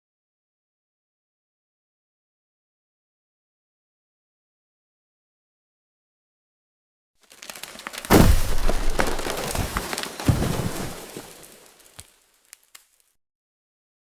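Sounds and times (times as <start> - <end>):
tree crashing with branches breaking: 7.2 - 13.0
small wood snaps: 7.2 - 13.1
wood crackling: 7.2 - 13.1
heavy thud: 8.0 - 11.3.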